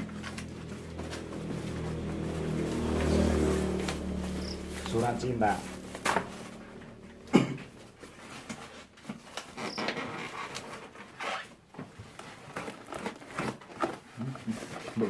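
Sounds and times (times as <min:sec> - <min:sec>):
cardboard rustling and scraping: 0:00.0 - 0:15.0.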